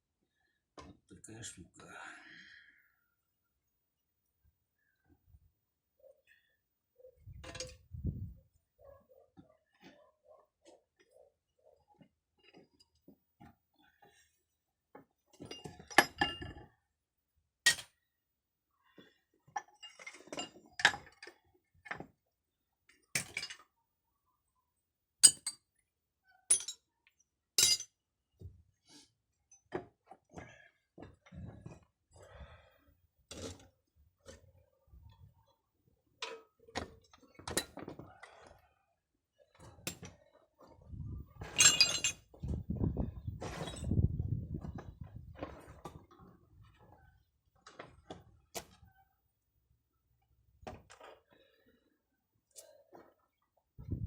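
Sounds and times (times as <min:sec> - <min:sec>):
metal tools clinking and knocking: 0:07.4 - 0:07.9, 0:15.4 - 0:16.6, 0:25.2 - 0:25.6, 0:26.5 - 0:26.8, 0:27.6 - 0:28.0, 0:41.4 - 0:42.4
metal parts clattering: 0:27.6 - 0:27.8, 0:41.4 - 0:42.2.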